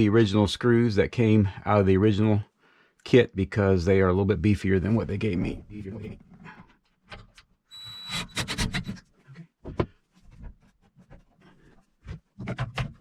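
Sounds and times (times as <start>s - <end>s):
cordless drill whining: 7.7s - 8.9s
rubbing sounds: 8.0s - 9.2s.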